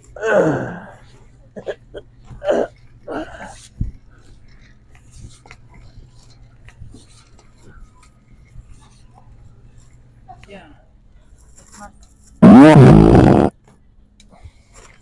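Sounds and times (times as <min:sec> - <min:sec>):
faint store background murmur: 0:00.0 - 0:15.0
short voice sounds: 0:12.4 - 0:13.5.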